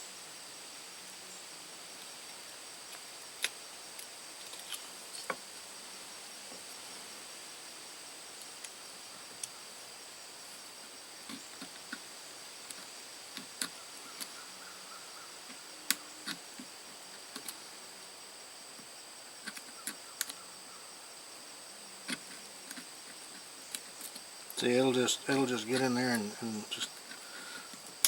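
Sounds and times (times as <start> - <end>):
cricket trill: 0.0 - 28.0
knife clicking while carving wood: 19.4 - 20.4.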